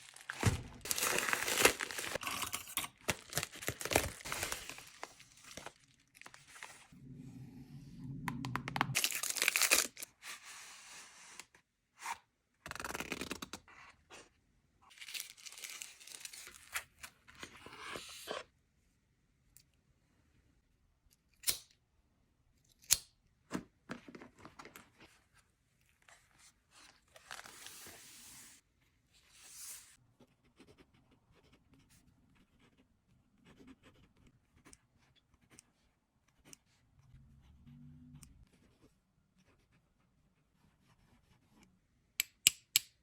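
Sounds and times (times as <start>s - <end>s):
packaging tearing and rustling: 0.0s - 6.8s, 9.0s - 10.1s, 15.0s - 16.8s.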